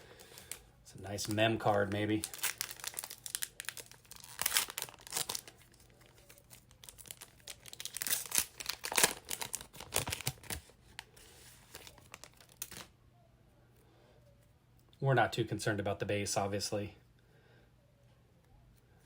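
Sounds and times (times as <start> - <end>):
plastic wrapper crinkling and tearing: 0.1 - 12.9.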